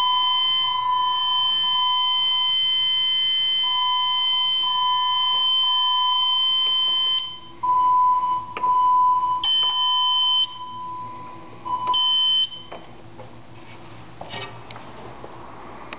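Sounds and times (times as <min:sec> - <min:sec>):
fire alarm high tones: 0:00.0 - 0:12.7.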